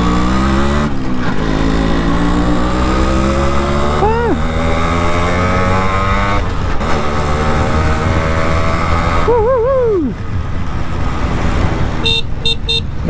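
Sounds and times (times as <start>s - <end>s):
heavy wind noise: 4.2s - 13.0s.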